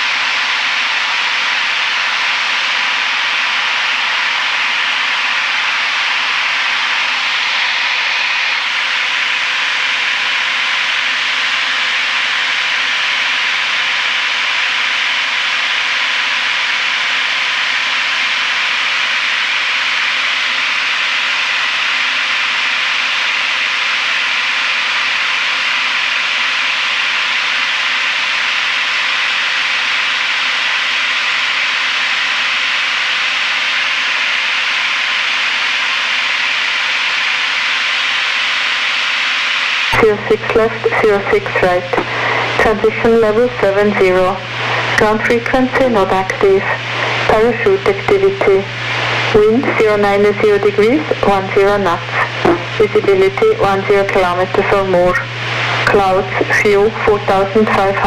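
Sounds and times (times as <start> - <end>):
plane engine and airflow hiss: 0.0 - 58.0
faint hum tones: 39.9 - 58.0.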